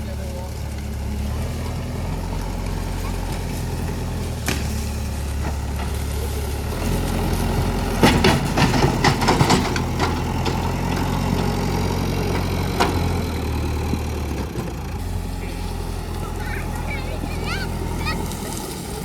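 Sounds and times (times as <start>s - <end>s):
diesel engine running: 0.0s - 19.0s
sharp knocks and clatter: 7.6s - 13.3s.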